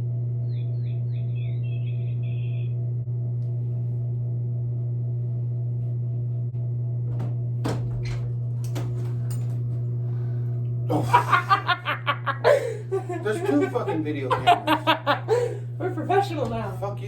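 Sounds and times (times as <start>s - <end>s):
low hum with overtones: 0.0s - 17.0s
voice: 10.9s - 11.9s, 12.5s - 17.0s.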